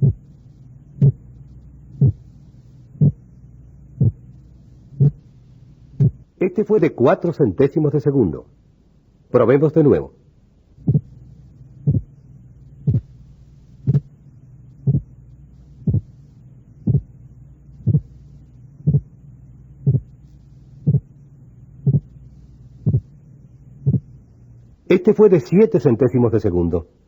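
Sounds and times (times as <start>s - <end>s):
split heart sounds: 0.0s - 3.3s, 3.9s - 4.4s, 5.0s - 5.3s, 6.0s - 6.3s, 10.8s - 11.2s, 11.8s - 12.2s, 12.8s - 13.2s, 13.8s - 14.1s, 14.8s - 19.2s, 19.8s - 21.2s, 21.8s - 23.2s, 23.8s - 24.2s
steady low hum: 0.0s - 27.0s.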